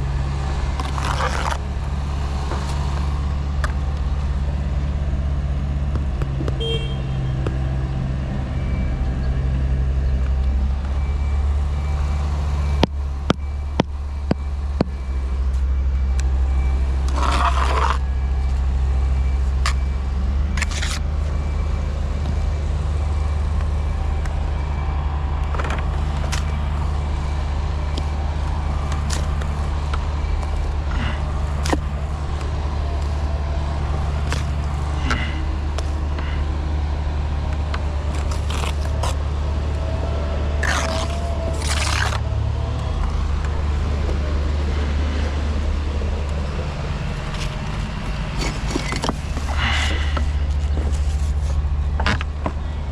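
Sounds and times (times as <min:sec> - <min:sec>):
low engine drone: 0:00.0 - 0:52.9
clicks and scrapes: 0:00.8 - 0:01.7, 0:17.1 - 0:18.1, 0:20.6 - 0:21.0, 0:38.1 - 0:39.2, 0:40.6 - 0:42.2, 0:47.3 - 0:52.3.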